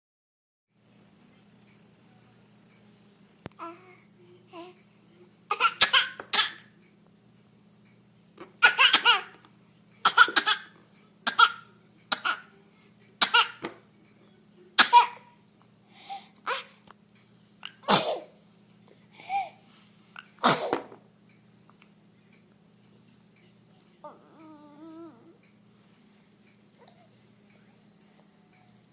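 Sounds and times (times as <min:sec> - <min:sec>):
child coughing: 0:05.5 - 0:06.7, 0:08.6 - 0:09.4, 0:10.0 - 0:10.7, 0:11.3 - 0:12.5, 0:13.2 - 0:13.6, 0:14.8 - 0:15.3, 0:17.7 - 0:18.4, 0:20.4 - 0:20.9.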